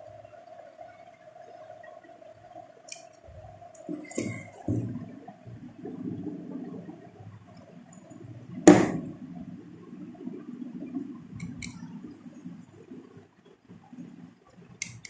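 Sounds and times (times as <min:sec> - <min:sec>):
sharp knock: 0:08.7 - 0:09.0
light clicks: 0:14.5 - 0:15.0.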